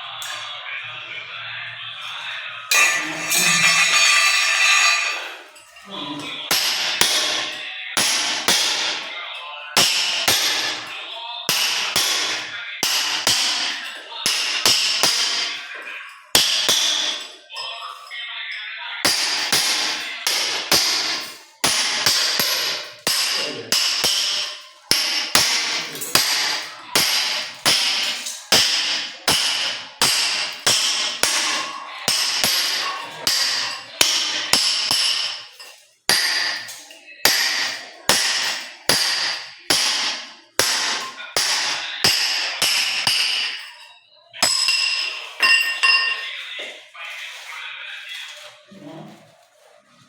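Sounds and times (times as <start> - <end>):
hand hammer blows: 2.7 - 5.3.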